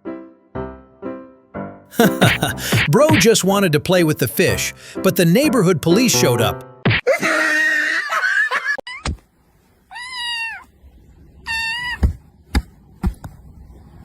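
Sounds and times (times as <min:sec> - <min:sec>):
cat meowing: 0:09.9 - 0:10.7, 0:11.4 - 0:12.2.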